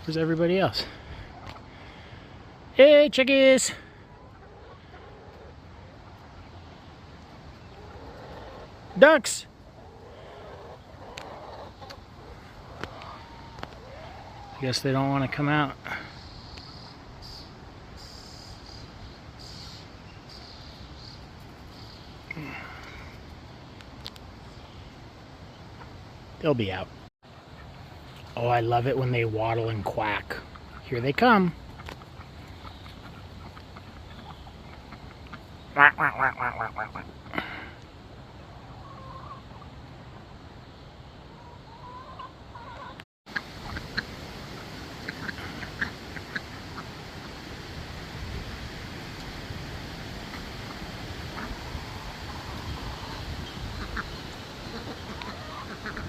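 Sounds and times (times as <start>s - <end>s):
chickens clucking: 0.0s - 2.2s, 3.6s - 16.0s, 26.6s - 40.4s, 41.3s - 47.4s, 50.2s - 56.0s.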